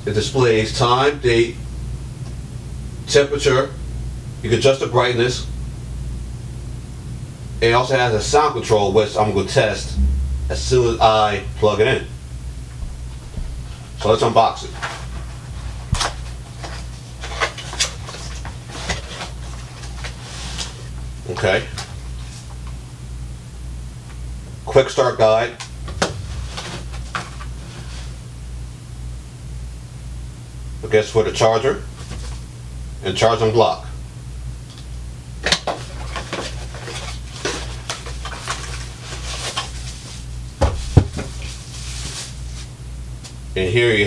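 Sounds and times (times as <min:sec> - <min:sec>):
steady low hum: 0:00.0 - 0:35.4
packaging scrapes and rustles: 0:41.3 - 0:42.7.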